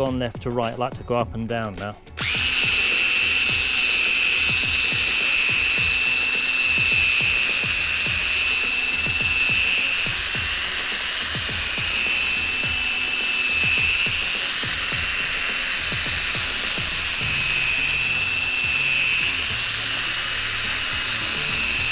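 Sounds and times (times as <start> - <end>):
power drill sanding plastic: 1.4 - 21.9.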